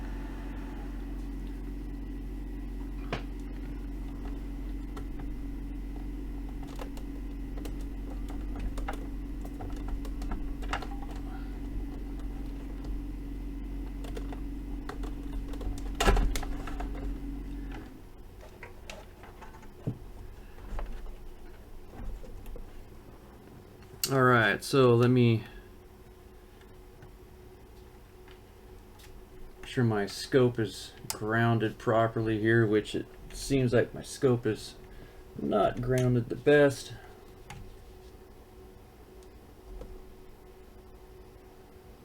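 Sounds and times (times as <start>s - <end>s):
low electrical hum: 0.0s - 42.0s
sharp handling clicks: 35.7s - 36.2s.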